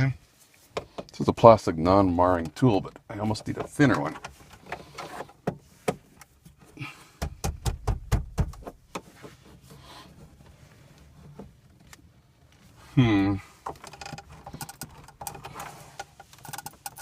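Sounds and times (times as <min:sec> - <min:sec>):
plastic trim clicks and knocks: 0:07.2 - 0:09.0.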